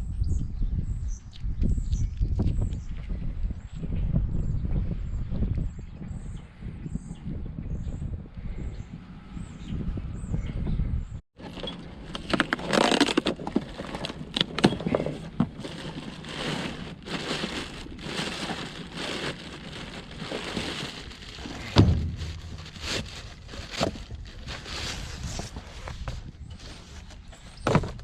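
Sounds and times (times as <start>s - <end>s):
hands handling parts: 11.4s - 26.2s.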